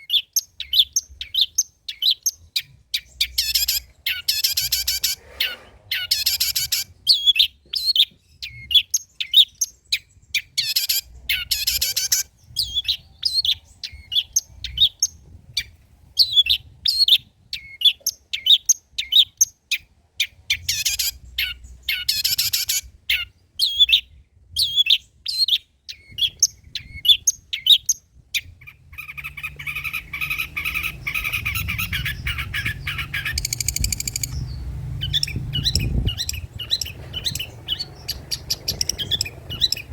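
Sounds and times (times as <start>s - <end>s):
bird chattering song: 0.0s - 39.9s.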